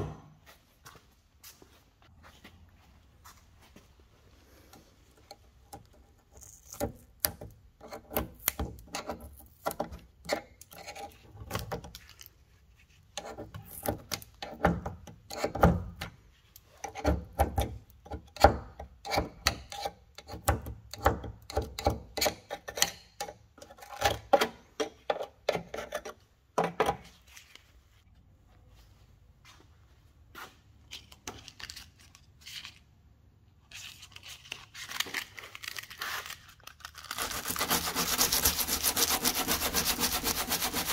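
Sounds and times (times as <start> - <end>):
hand sanding strokes: 37.2 - 40.9.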